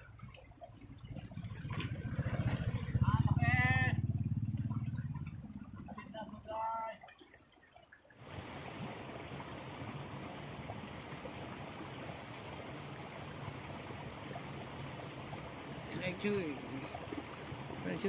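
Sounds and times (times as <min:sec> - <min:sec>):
stream water rushing: 0:00.0 - 0:18.0.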